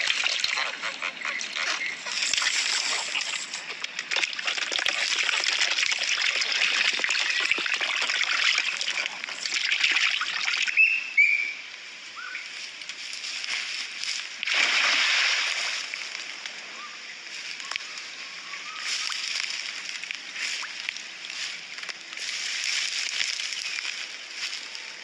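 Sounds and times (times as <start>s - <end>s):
water splashing and sloshing: 0.0s - 10.8s, 13.3s - 16.4s.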